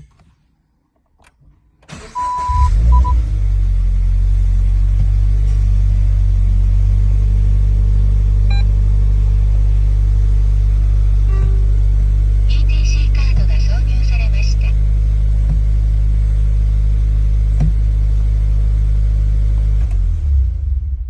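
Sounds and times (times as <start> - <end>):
car engine starting and idling: 0.0 - 21.0
short beeps: 2.2 - 3.2.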